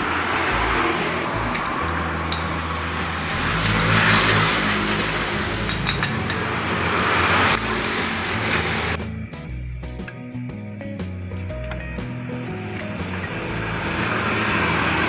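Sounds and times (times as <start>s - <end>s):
rushing noise: 0.0s - 9.0s, 12.5s - 15.0s
background music with bass line: 0.0s - 15.0s.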